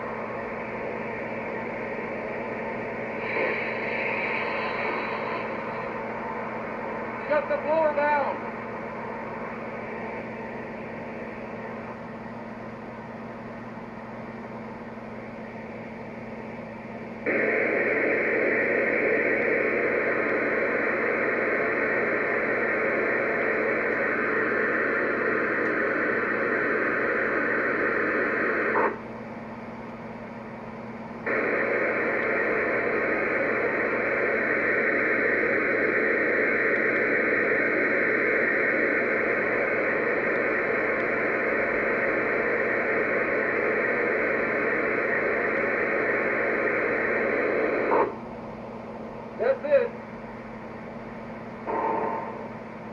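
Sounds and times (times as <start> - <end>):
low steady hum: 0.0 - 52.9
click: 40.9 - 41.1.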